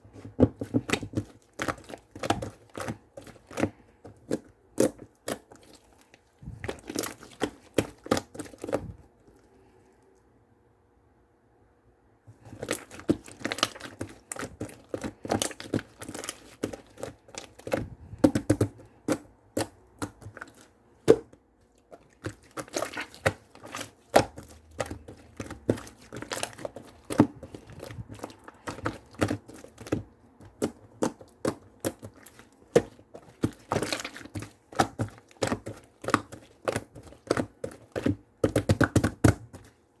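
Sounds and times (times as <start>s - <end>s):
slime squishing and popping: 12.5s - 39.8s.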